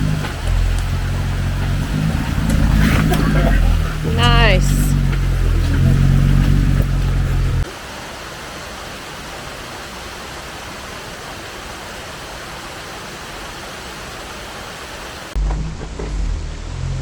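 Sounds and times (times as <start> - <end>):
creek rushing: 0.0 - 15.4.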